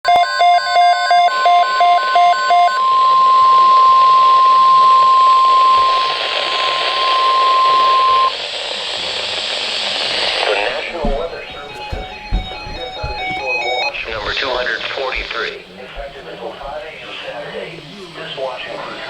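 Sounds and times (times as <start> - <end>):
steady alarm tone: 0.0 - 8.3, 10.7 - 17.0
radio hiss: 5.6 - 10.9, 14.0 - 19.0.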